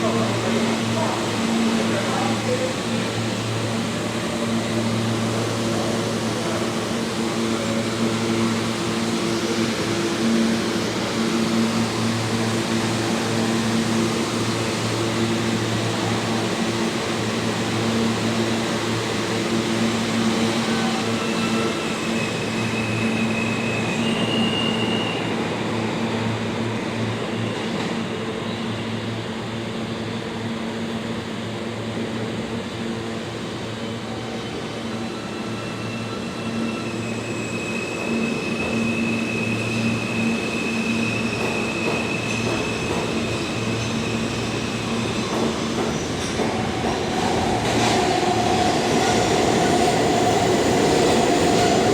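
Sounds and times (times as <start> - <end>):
subway train rumbling: 0.0 - 51.9
high wheel squeal: 20.9 - 25.3, 35.0 - 45.1.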